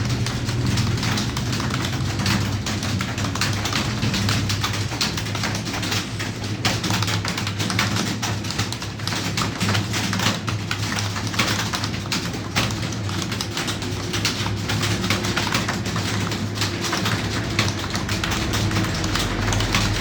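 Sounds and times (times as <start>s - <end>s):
keyboard typing clicks: 0.0s - 20.0s.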